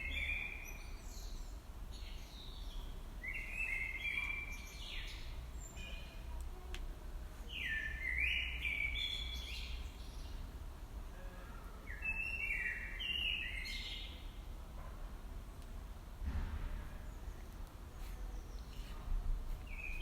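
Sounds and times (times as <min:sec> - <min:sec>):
small songbird singing: 0:00.0 - 0:06.4, 0:07.4 - 0:10.5, 0:11.8 - 0:14.4, 0:17.1 - 0:20.0
steady low rumble: 0:15.5 - 0:20.0.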